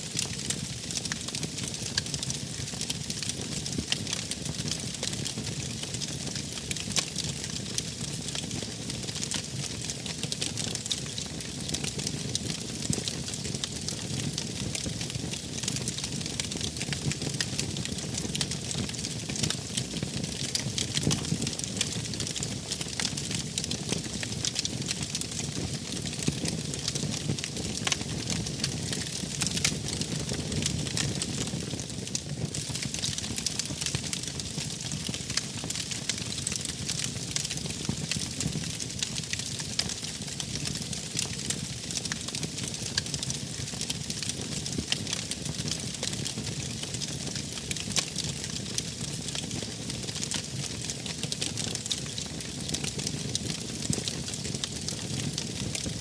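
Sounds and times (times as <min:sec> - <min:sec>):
wood fire crackling and popping: 0:00.1 - 0:56.0.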